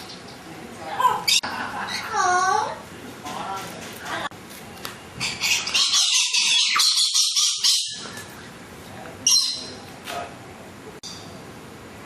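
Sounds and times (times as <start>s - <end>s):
bird squawking harshly: 5.2s - 8.1s.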